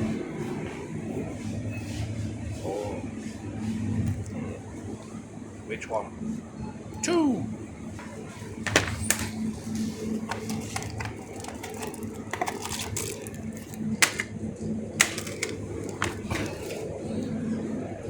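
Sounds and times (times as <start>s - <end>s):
sharp clicks and knocks: 10.3s - 14.3s, 15.0s - 16.8s.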